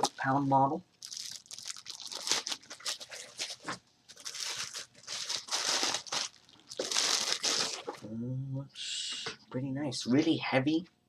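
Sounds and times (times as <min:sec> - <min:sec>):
packaging rustling and crinkling: 0:01.0 - 0:08.0.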